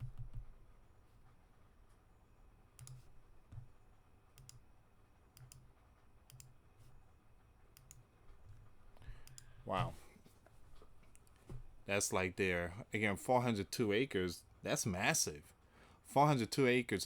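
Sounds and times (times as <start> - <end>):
computer mouse clicks: 2.8 - 3.7, 4.4 - 4.6, 5.4 - 5.7, 6.3 - 6.6, 7.8 - 8.1, 9.2 - 9.5.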